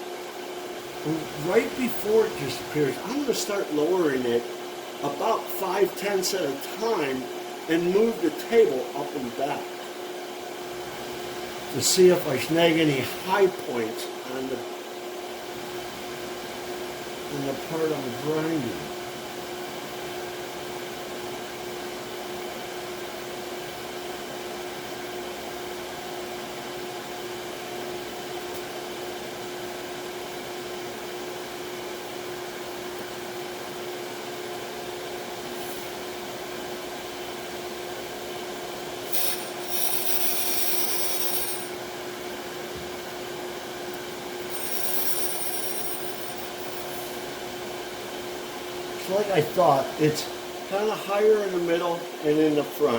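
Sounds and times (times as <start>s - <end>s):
grinding wheel hissing on metal: 39.0s - 41.8s, 44.4s - 47.3s
surface grinder humming: 39.1s - 41.8s, 44.4s - 47.2s.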